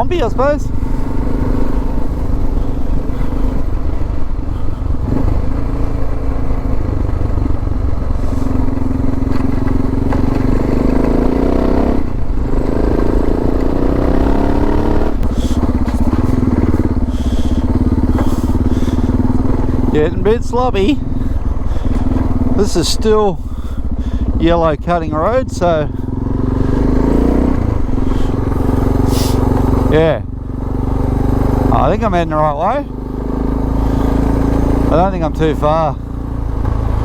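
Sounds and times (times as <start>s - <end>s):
motorcycle engine accelerating: 0.0s - 37.0s
motorcycle gear change: 8.1s - 20.0s.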